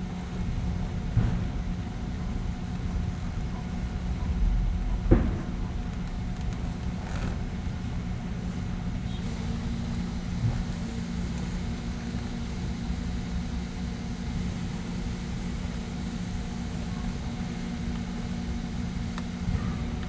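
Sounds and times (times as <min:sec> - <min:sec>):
vehicle engine humming: 0:05.6 - 0:20.0.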